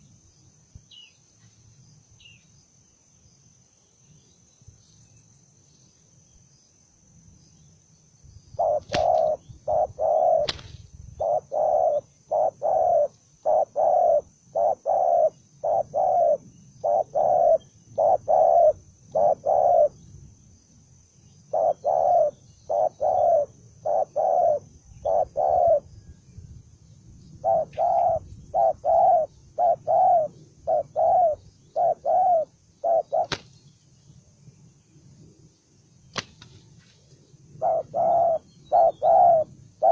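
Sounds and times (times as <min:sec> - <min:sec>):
faint high insect-like tone: 0:00.0 - 0:39.9
dove cooing: 0:08.6 - 0:20.0, 0:21.5 - 0:25.9, 0:27.4 - 0:33.4, 0:37.6 - 0:39.9.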